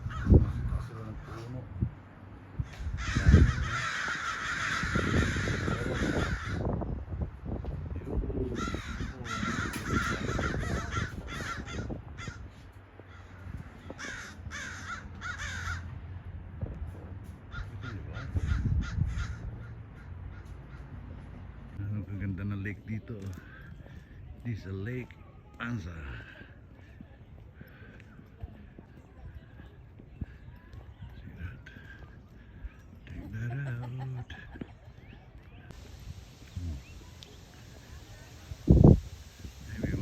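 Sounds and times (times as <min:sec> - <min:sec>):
crows cawing: 0:00.0 - 0:01.6, 0:02.6 - 0:06.8, 0:08.5 - 0:16.0, 0:17.4 - 0:21.2, 0:23.4 - 0:24.0.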